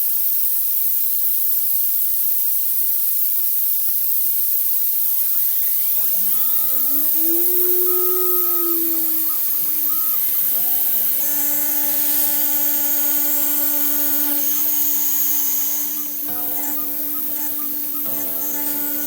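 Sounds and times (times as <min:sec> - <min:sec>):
air blast hissing: 0:03.8 - 0:19.0
milling machine motor whine: 0:05.0 - 0:19.0.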